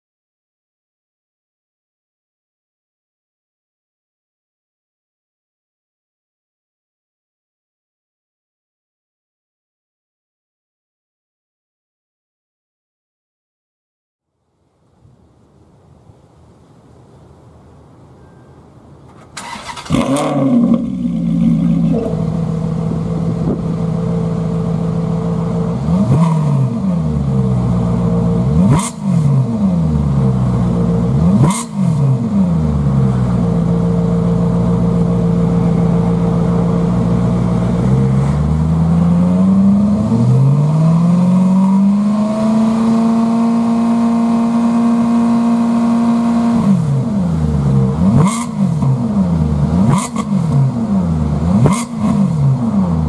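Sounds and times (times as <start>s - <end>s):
car engine idling and revving: 19.1s - 53.0s.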